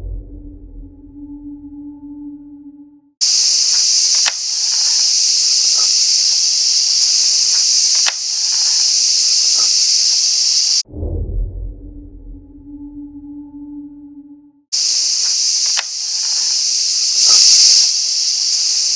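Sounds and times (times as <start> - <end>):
loud steady hiss: 3.2 - 10.8, 14.8 - 18.9
sharp click: 3.6 - 6.0, 7.0 - 8.9, 15.2 - 16.5, 17.2 - 17.9.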